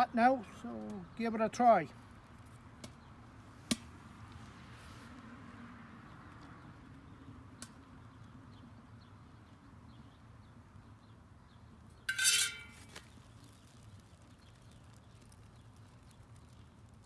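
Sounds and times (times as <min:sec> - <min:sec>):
metal utensil clattering on steel: 0:12.1 - 0:13.0.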